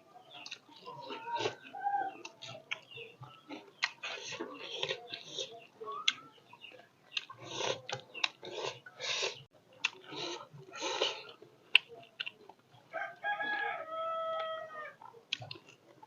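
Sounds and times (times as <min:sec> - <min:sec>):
close-up chewing: 0:00.3 - 0:16.0
rooster crowing: 0:12.9 - 0:15.0.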